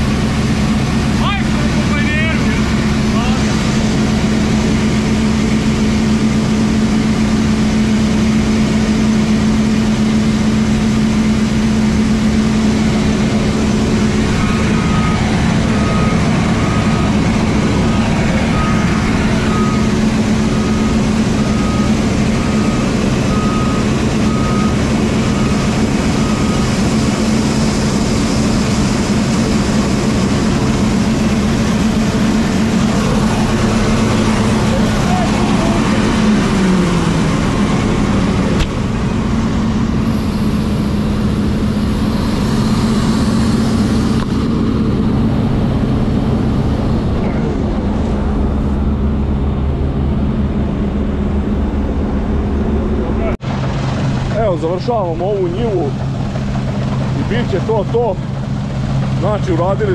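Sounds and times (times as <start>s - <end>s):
combine harvester engine drone: 0.0s - 59.9s
electronic beeper: 13.9s - 17.3s.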